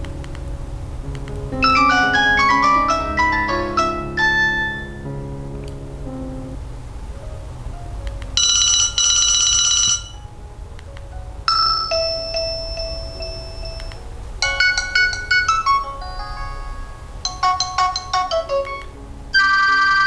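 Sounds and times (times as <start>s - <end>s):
quick run of bright notes: 1.1s - 6.6s
ringing phone chime: 8.4s - 10.2s, 11.5s - 20.0s
trilling electronic ringtone: 8.4s - 10.2s, 11.5s - 20.0s.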